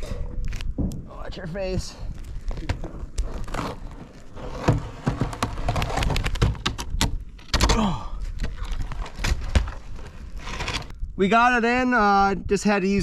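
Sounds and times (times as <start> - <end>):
wooden knocks and clatter: 2.5 - 7.8, 8.4 - 10.9.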